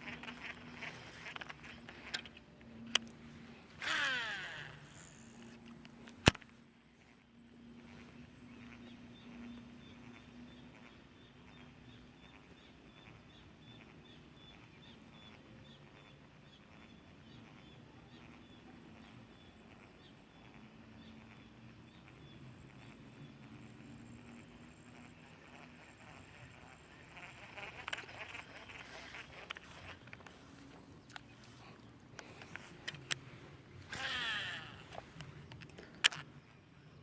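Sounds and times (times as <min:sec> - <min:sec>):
fishing reel ticking: 0:00.0 - 0:06.4, 0:25.4 - 0:31.5, 0:32.1 - 0:36.3
faint high-pitched hum: 0:00.0 - 0:37.0
sharp click: 0:05.0 - 0:06.6.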